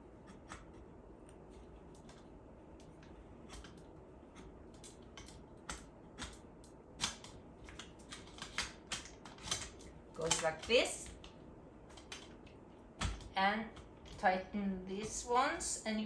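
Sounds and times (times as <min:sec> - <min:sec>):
frame parts clicking and knocking: 0:02.0 - 0:14.3.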